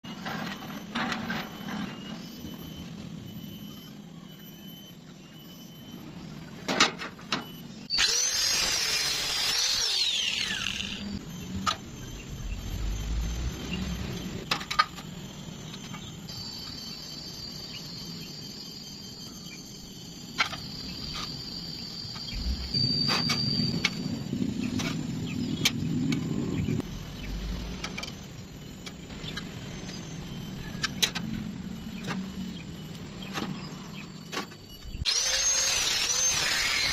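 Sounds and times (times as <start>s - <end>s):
high whine: 0.0s - 36.9s
low hum: 9.8s - 36.9s.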